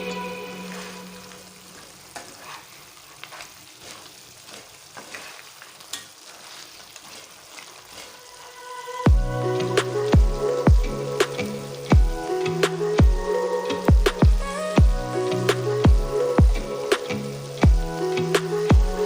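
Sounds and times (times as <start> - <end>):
background music: 0.0 - 2.0, 8.2 - 19.0
stirring in a pan: 0.0 - 13.0
food sizzling in oil: 0.0 - 19.0.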